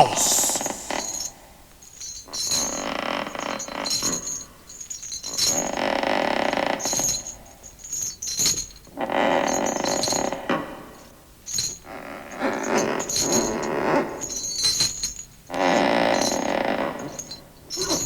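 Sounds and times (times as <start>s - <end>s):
metal clinking and rattling: 11.4s - 15.5s, 16.1s - 18.0s.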